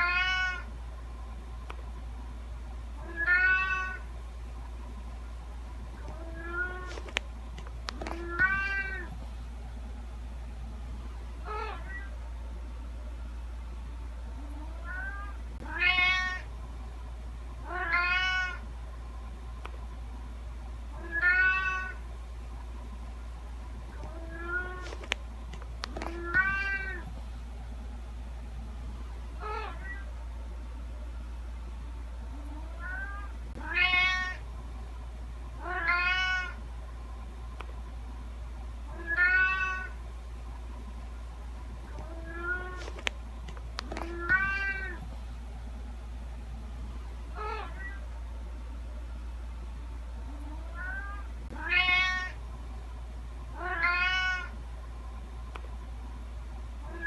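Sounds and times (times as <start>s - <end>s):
cat meowing: 0.0s - 0.7s, 3.0s - 4.0s, 8.2s - 9.1s, 14.8s - 16.4s, 17.7s - 18.6s, 21.0s - 22.0s, 26.1s - 27.1s, 32.8s - 34.4s, 35.6s - 36.6s, 38.9s - 40.0s, 42.0s - 42.8s, 44.0s - 45.0s, 47.4s - 48.0s, 50.7s - 52.4s, 53.6s - 54.5s.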